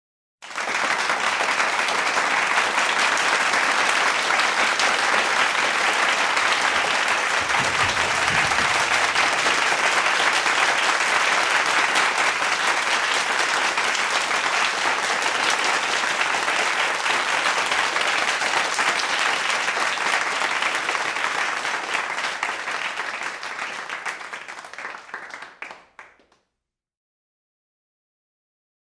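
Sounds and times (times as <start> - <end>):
crowd applauding: 0.4 - 26.4.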